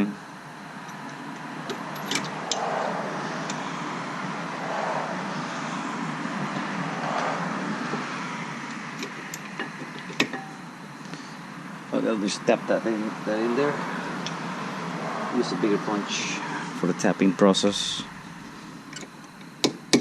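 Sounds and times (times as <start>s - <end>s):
road traffic passing: 0.0s - 20.0s.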